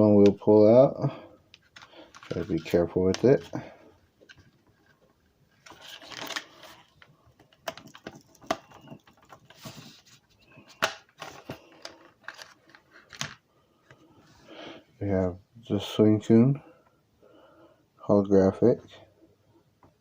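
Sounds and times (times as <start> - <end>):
plastic packaging rustling: 1.6 - 3.4, 4.3 - 13.4.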